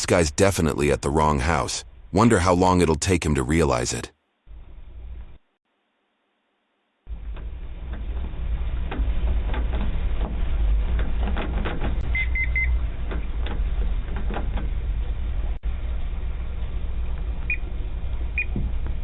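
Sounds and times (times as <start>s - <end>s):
outdoor background rumble: 0.0s - 3.9s, 4.5s - 5.6s, 7.1s - 19.0s
clicks and knocks: 7.2s - 12.1s, 12.8s - 15.1s.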